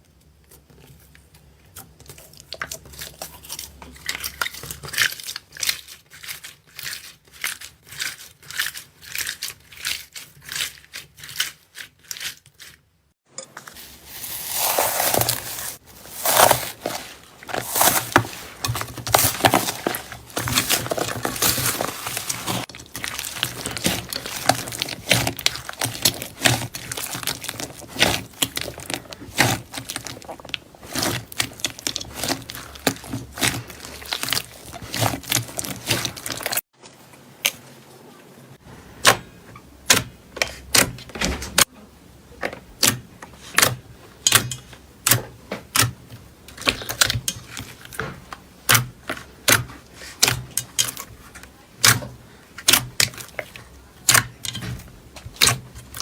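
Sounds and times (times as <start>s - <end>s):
slime wet crackling: 14.3s - 36.6s.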